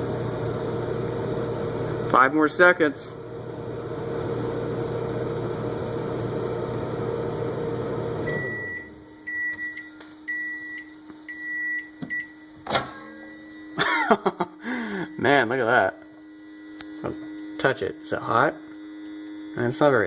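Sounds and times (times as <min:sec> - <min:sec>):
microwave oven humming: 0:00.0 - 0:20.0
high beeps: 0:08.3 - 0:20.0.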